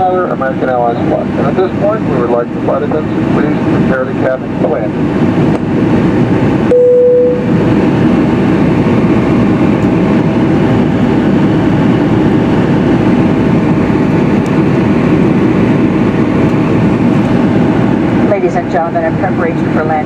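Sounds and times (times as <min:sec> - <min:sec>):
airliner engine and airflow noise: 0:00.0 - 0:20.0
faint steady hum: 0:06.6 - 0:07.6
short single tone: 0:06.7 - 0:07.5.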